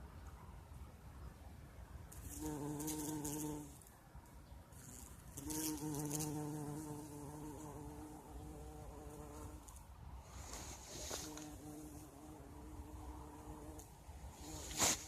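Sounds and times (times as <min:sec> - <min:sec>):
bumblebee buzzing: 0:02.1 - 0:03.9, 0:04.7 - 0:09.8, 0:11.0 - 0:14.8.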